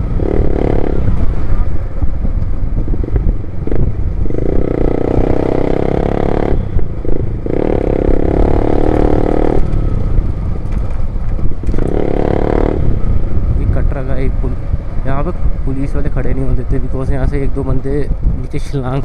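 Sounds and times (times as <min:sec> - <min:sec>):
motorcycle exhaust: 0:00.0 - 0:13.8
wind rumble on microphone: 0:00.0 - 0:19.0.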